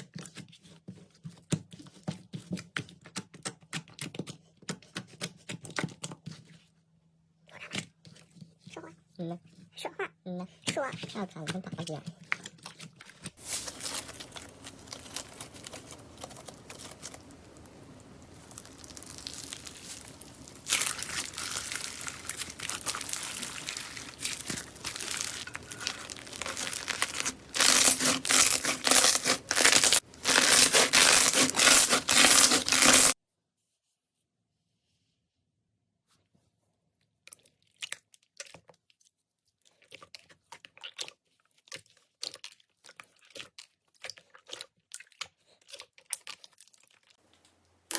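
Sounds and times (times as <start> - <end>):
slime crackling and popping: 13.4 - 33.2.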